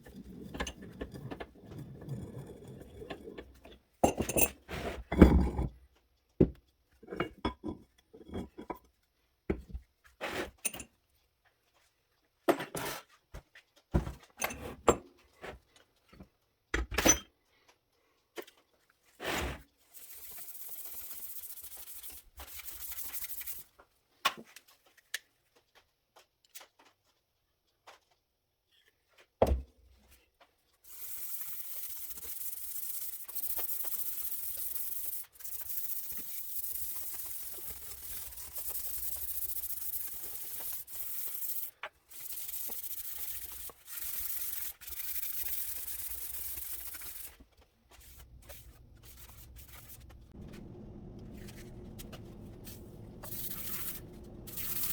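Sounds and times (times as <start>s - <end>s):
abrasive rubbing on steel: 30.9s - 54.9s.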